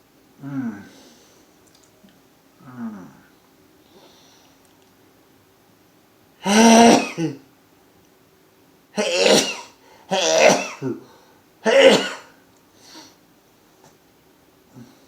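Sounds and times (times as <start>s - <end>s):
man sneezing: 6.4s - 7.4s, 9.0s - 11.0s, 11.6s - 12.3s.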